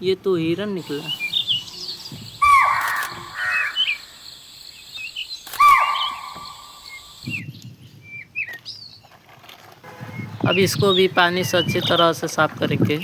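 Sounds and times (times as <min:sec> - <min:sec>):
small birds chirping: 0:00.0 - 0:13.0
harsh animal calls: 0:00.8 - 0:07.4.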